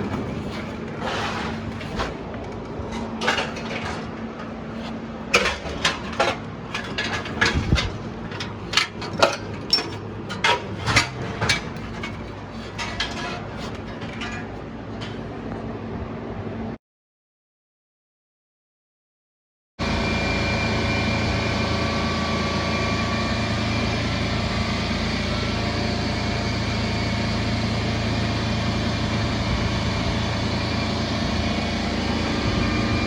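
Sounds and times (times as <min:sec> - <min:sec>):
metal tools clanking: 0:02.8 - 0:15.2
steady low hum: 0:23.2 - 0:33.0.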